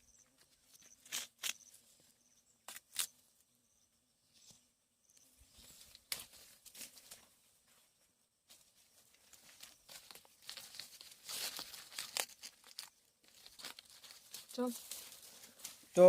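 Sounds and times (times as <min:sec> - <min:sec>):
dry corn plants rustling: 0:00.0 - 0:02.1, 0:05.4 - 0:07.8, 0:08.5 - 0:16.0.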